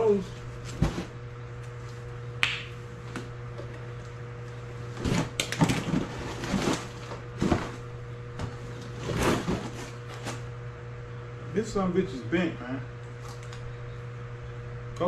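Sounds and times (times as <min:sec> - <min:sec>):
steady low hum: 0:00.0 - 0:15.0
cardboard packaging rustling: 0:05.0 - 0:07.8.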